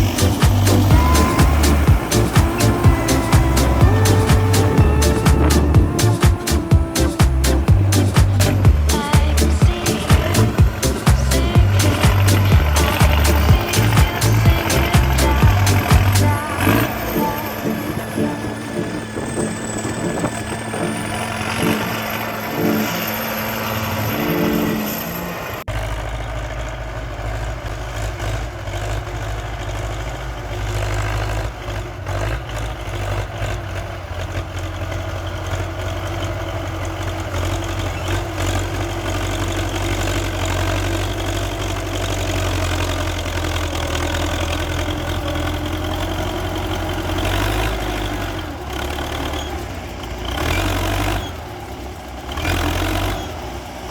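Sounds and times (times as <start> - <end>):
music: 0.0 - 20.2, 21.6 - 21.9, 22.5 - 23.0
tractor diesel engine running: 0.0 - 53.9.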